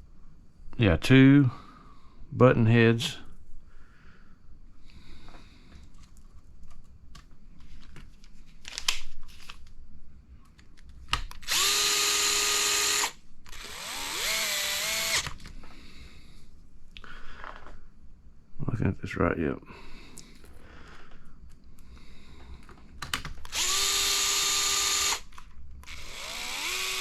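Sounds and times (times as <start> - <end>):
electric screwdriver motor whine: 11.4 - 15.4, 23.4 - 27.0.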